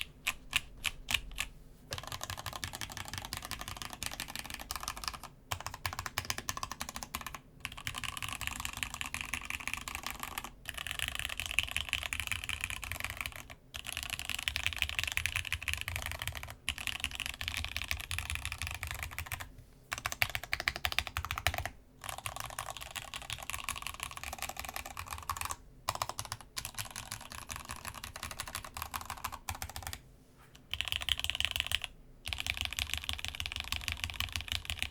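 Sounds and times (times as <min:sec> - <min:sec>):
mechanical keyboard typing: 0:00.0 - 0:30.0, 0:30.6 - 0:34.9.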